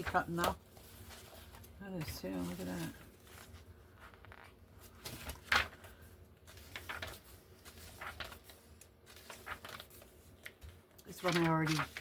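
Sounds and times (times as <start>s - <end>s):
paper pages rustling: 0.0s - 12.0s.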